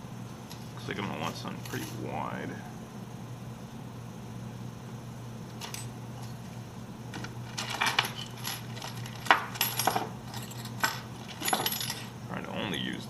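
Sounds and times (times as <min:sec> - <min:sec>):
metal tools clinking and clicking: 0:07.5 - 0:12.1.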